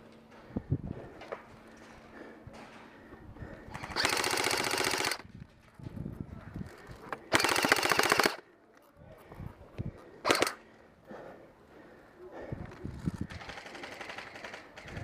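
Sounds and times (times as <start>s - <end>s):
airsoft rifle firing bursts: 3.8s - 5.2s, 7.3s - 8.4s, 10.2s - 10.6s, 13.3s - 15.0s.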